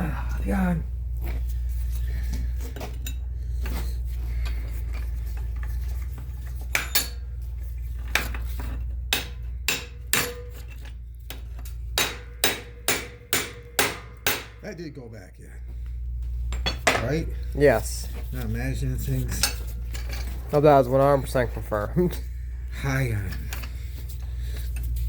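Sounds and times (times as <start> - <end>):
steady low hum: 0.0 - 25.0
metal clinks and knocks: 2.0 - 12.9, 16.3 - 17.2, 19.3 - 20.5
hammer striking metal: 6.7 - 7.2, 9.1 - 10.7, 12.0 - 14.6.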